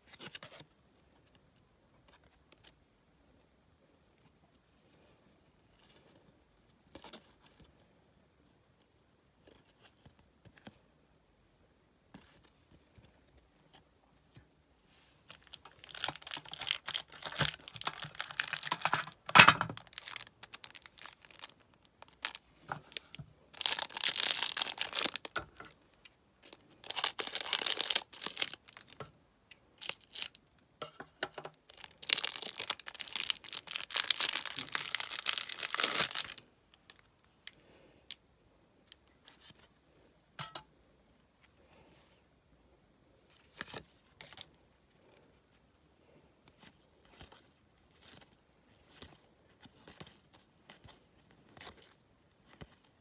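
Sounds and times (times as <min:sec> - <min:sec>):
card wrappers tearing and crinkling: 0:15.4 - 0:25.7, 0:26.8 - 0:29.0, 0:31.7 - 0:36.4.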